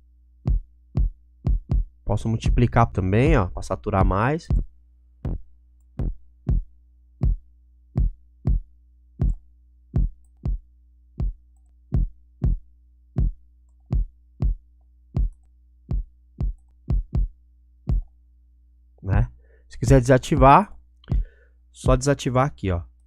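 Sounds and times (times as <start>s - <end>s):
kick drum thumps: 0.4s - 3.4s, 4.0s - 9.4s, 10.0s - 12.6s, 13.2s - 14.6s, 15.2s - 18.1s, 19.1s - 19.3s, 19.9s - 21.3s, 21.9s - 22.1s.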